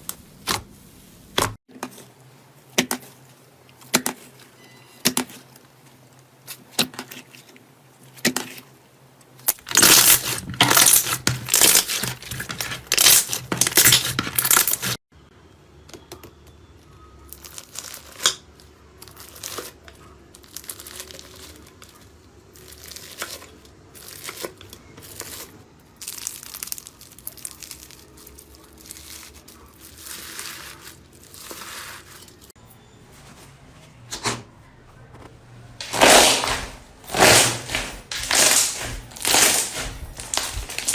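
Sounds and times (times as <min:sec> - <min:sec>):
slime squishing and popping: 0:09.4 - 0:15.0, 0:35.8 - 0:40.9.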